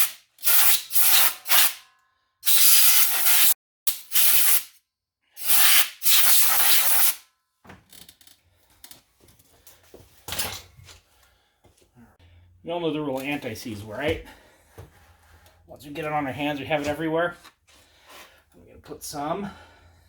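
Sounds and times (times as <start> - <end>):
aerosol can spraying: 0.0 - 1.8, 2.5 - 4.8, 5.4 - 7.2.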